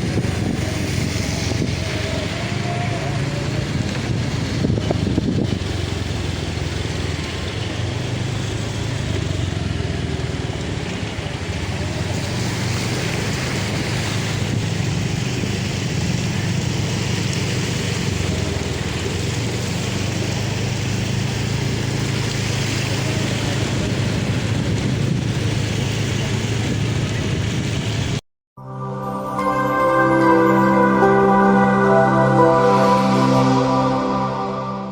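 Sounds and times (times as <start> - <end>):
vehicle engines humming: 0.0 - 24.4.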